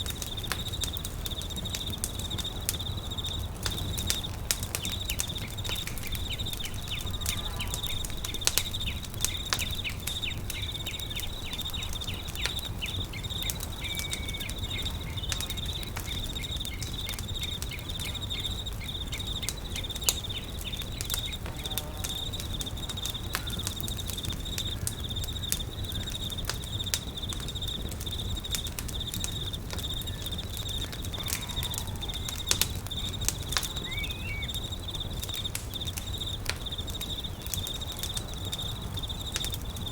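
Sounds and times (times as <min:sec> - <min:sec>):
campfire crackling and popping: 0:00.0 - 0:39.9
insects trilling: 0:00.0 - 0:39.9
faint bird call: 0:04.8 - 0:18.9, 0:30.0 - 0:34.8.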